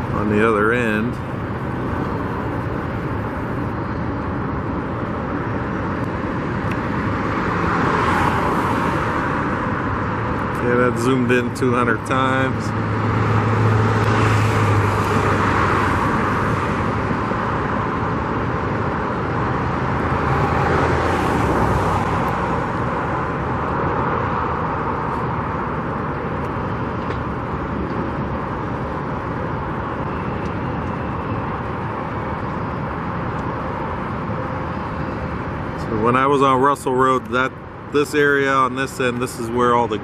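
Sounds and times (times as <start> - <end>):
roadside traffic: 0.0 - 40.0
vehicles passing: 0.0 - 40.0.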